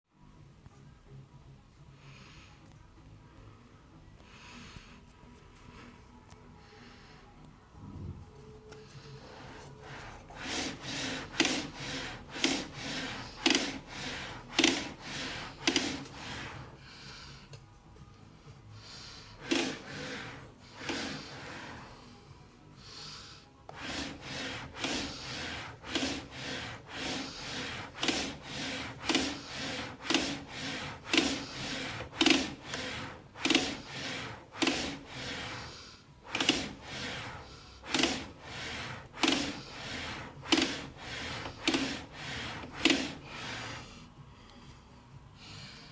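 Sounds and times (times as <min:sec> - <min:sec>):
printer carriage swishing: 0:09.3 - 0:16.8, 0:19.4 - 0:22.0, 0:23.7 - 0:43.8.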